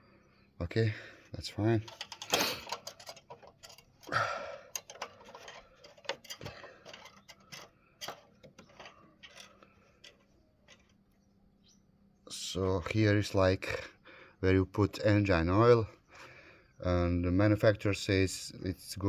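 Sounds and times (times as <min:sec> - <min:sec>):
rustling scrapes: 0:01.8 - 0:04.1, 0:04.7 - 0:11.0
light clicks and knocks: 0:04.7 - 0:11.0.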